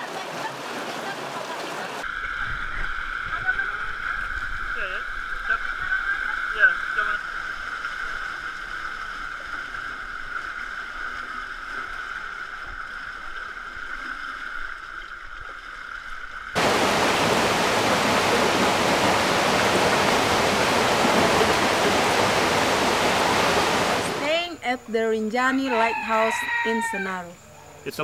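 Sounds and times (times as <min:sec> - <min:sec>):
faint flowing water: 0:00.0 - 0:28.0
waterfall rushing: 0:16.6 - 0:24.3.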